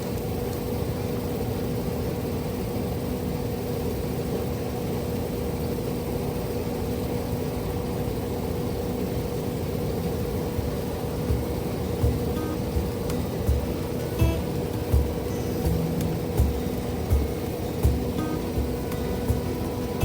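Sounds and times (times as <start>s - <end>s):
engine humming steadily: 9.7s - 20.0s.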